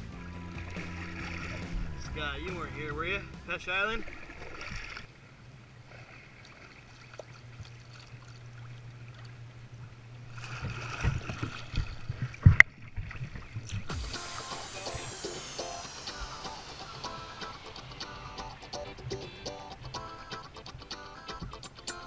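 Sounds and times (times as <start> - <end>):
music: 0.0 - 3.7, 13.9 - 22.0
paddle strokes: 0.0 - 5.1
water sloshing: 0.0 - 5.2, 5.8 - 14.0
steady low hum: 13.9 - 21.2.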